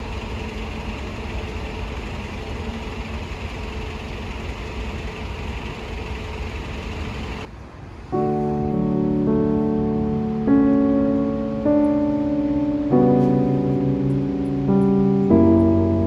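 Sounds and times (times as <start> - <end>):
moving vehicle rumble: 0.0 - 16.0
soft piano music: 8.0 - 16.0.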